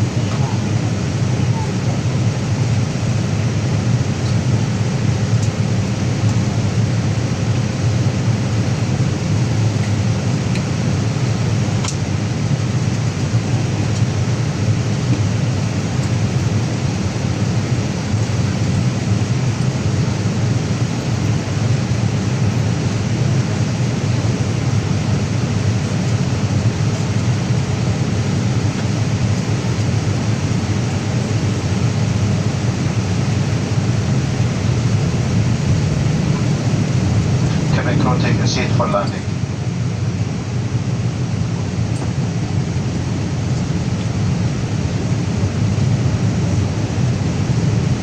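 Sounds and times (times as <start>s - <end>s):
airplane cabin airflow and engine: 0.0s - 48.0s.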